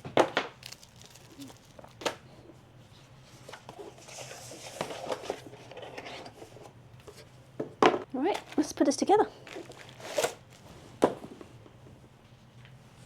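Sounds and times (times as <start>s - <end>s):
packaging rustling: 0.6s - 2.1s, 8.3s - 8.7s, 9.4s - 10.7s.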